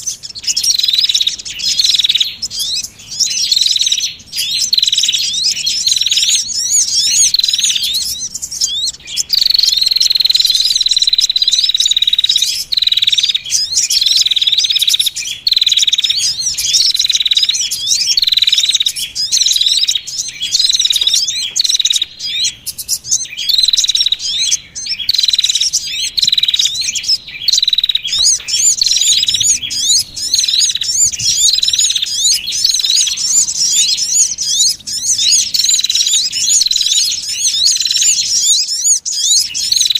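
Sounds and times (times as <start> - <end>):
small songbirds chirping: 0.0 - 39.9.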